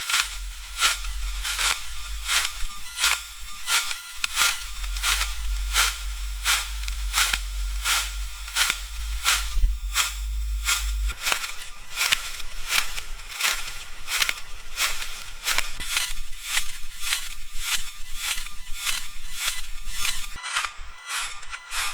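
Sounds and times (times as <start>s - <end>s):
footsteps on leaves: 0.0s - 17.2s.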